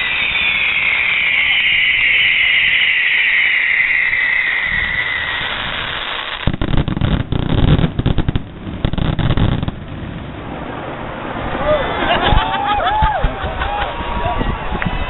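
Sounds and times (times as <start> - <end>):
hiss falling in pitch: 0.0 - 6.8
firecracker bangs: 0.0 - 10.6.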